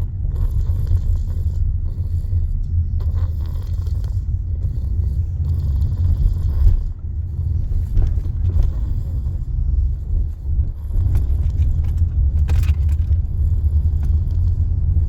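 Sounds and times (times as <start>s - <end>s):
person snoring heavily: 0.3s - 6.9s.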